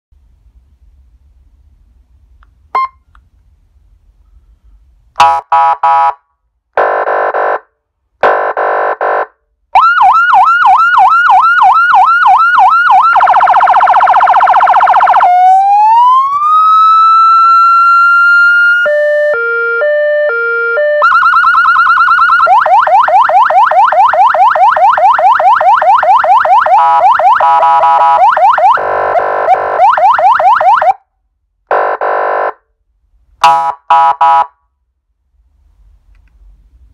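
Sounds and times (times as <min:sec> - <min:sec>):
electronic siren yelp and warble: 0:09.8 - 0:31.0
siren wail: 0:09.8 - 0:31.0
two-tone hi-lo siren: 0:09.8 - 0:31.0, 0:33.4 - 0:34.5.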